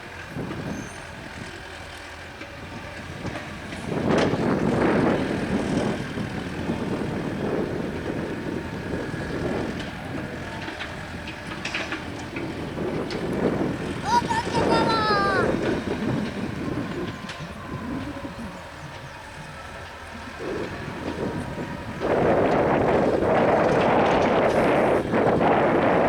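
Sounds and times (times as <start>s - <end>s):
excavator engine running: 7.9s - 26.0s.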